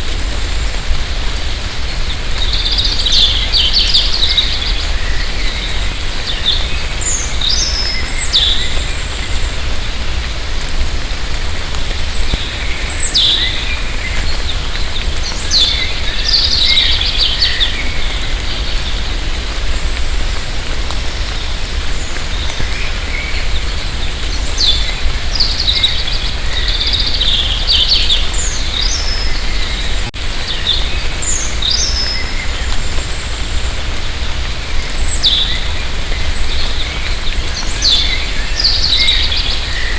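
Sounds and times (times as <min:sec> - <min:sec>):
light rain in forest: 0:00.0 - 0:39.9
songbirds whistling and chirping: 0:02.4 - 0:09.5, 0:12.2 - 0:14.4, 0:15.0 - 0:19.0, 0:22.4 - 0:33.0, 0:35.0 - 0:39.9.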